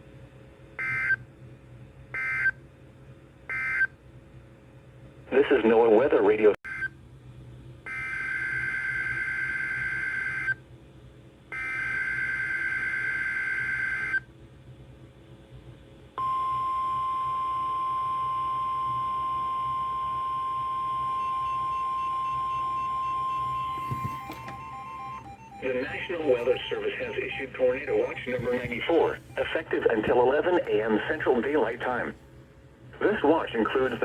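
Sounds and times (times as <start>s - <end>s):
steady single-pitch alarm tone: 7.9s - 10.6s, 11.6s - 14.2s, 16.2s - 29.7s
buzzing data tone bursts: 20.2s - 28.4s.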